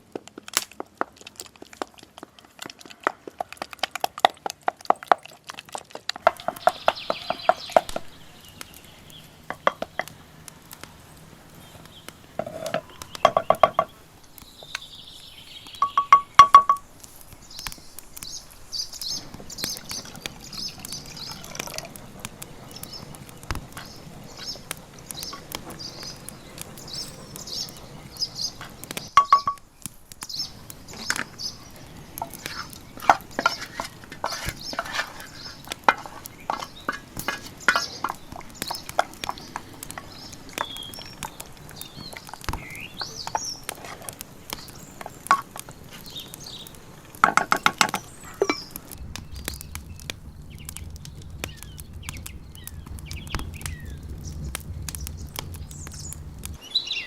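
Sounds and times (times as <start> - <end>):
birds chirping: 1.5 - 57.0
short metallic clinks: 26.8 - 27.6.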